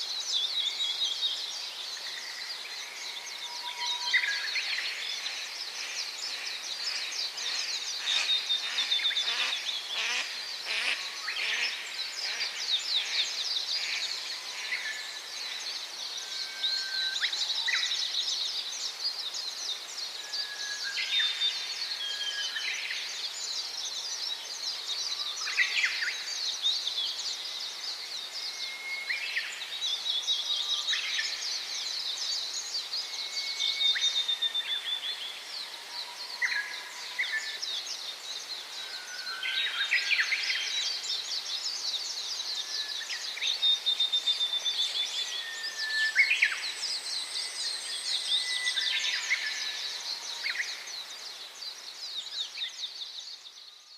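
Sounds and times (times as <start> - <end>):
small birds chirping: 4.0 - 16.2.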